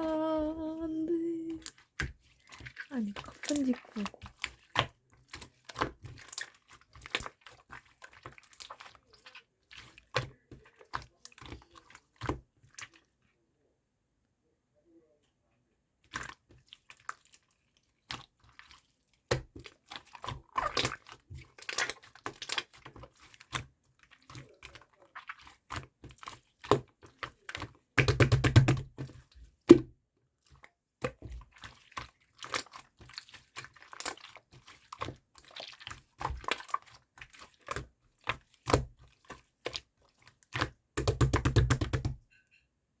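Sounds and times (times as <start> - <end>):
crunchy wet chewing: 19.6 - 27.7.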